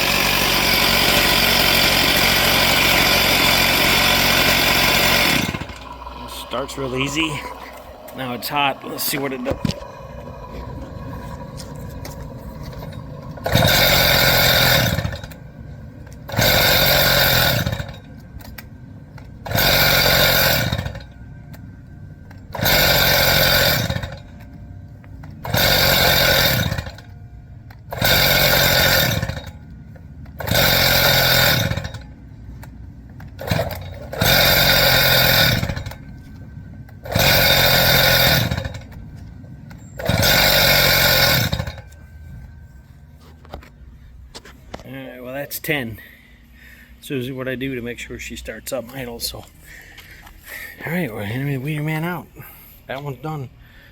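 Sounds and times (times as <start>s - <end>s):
saw engine revving from idle: 0.0s - 15.5s, 16.2s - 18.1s, 19.4s - 21.2s, 22.5s - 24.4s, 25.3s - 27.1s, 27.9s - 29.7s, 30.4s - 32.1s, 33.3s - 36.2s, 37.0s - 39.0s, 40.0s - 42.0s.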